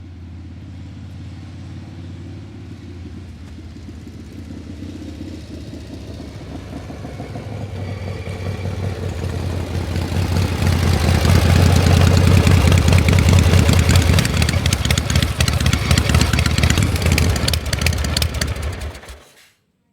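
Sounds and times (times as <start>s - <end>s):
heavy mechanical rumble: 8.3s - 19.3s.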